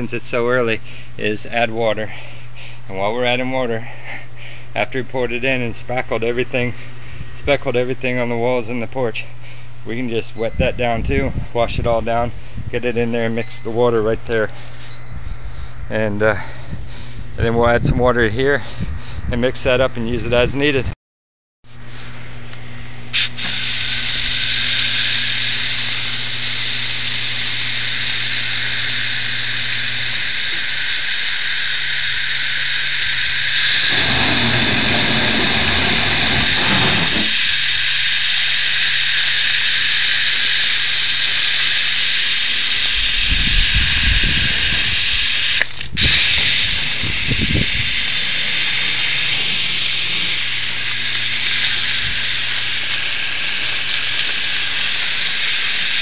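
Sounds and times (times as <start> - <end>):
hose spraying water: 21.6 - 56.0.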